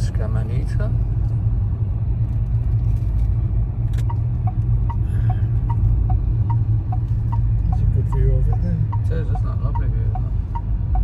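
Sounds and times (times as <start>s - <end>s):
car road and engine rumble: 0.0s - 11.0s
indicator ticking: 5.7s - 11.0s.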